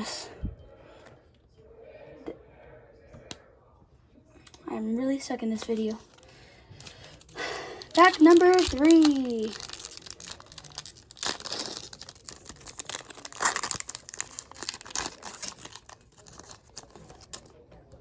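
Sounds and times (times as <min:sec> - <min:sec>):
plastic wrapper tearing and crinkling: 0:06.8 - 0:17.5.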